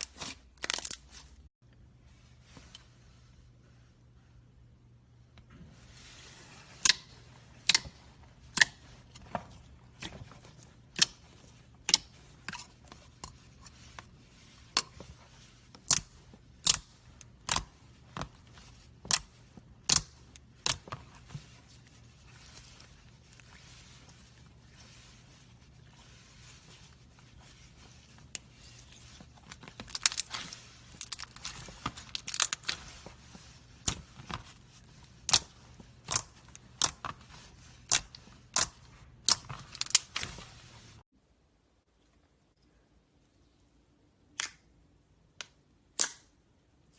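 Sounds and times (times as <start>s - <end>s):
slime crackling: 7.6s - 41.0s.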